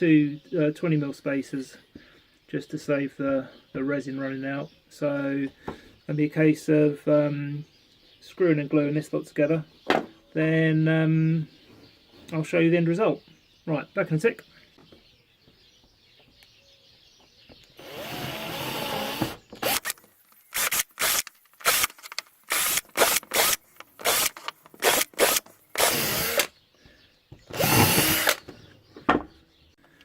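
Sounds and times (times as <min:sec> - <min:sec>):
electric drill running: 0:17.8 - 0:26.5, 0:27.5 - 0:28.4.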